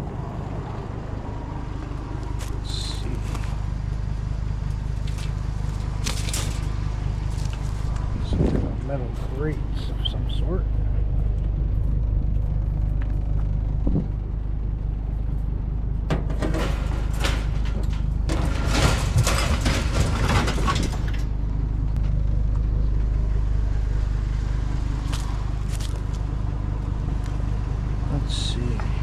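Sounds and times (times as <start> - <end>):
truck engine idling: 0.0 - 29.0
scrap metal clattering: 4.8 - 9.9, 16.0 - 21.4.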